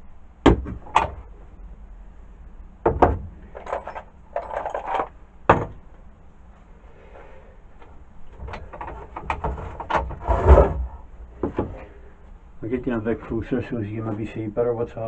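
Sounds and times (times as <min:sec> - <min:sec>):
parts clattering: 0:02.9 - 0:05.9.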